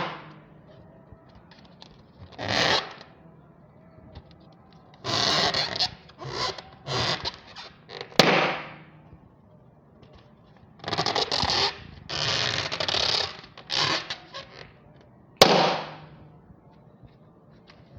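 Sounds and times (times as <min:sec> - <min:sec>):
balloons popping: 0:00.0 - 0:00.4, 0:08.1 - 0:08.8, 0:15.4 - 0:16.1.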